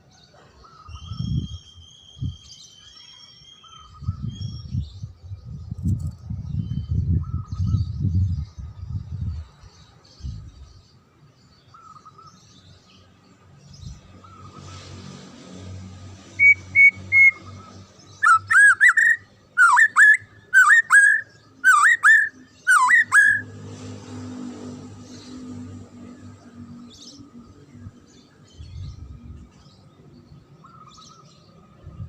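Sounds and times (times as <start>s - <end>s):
bird singing whistled phrases: 0.9s - 4.7s, 16.4s - 17.5s, 18.2s - 23.5s.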